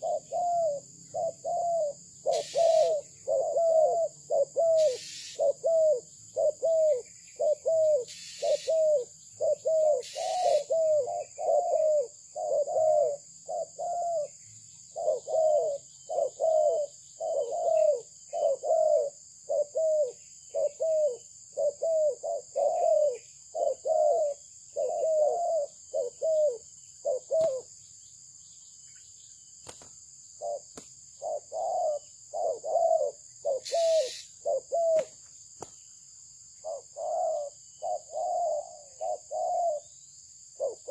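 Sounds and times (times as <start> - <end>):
dove cooing: 0.0 - 27.7, 30.4 - 35.2, 36.6 - 40.0, 40.6 - 40.9
steady high hiss: 2.2 - 3.1, 4.8 - 5.6, 8.0 - 9.0, 9.9 - 10.8, 33.6 - 36.7.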